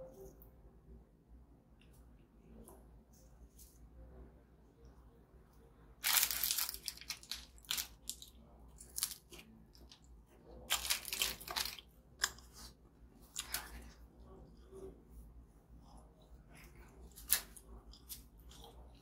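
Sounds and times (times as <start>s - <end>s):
crunching biscuits: 6.0s - 14.7s, 15.9s - 19.0s.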